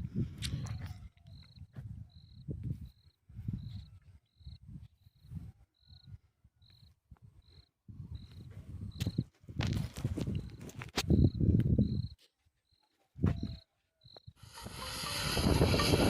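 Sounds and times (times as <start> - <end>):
faint high chirp: 0.7 - 9.2, 12.7 - 14.3.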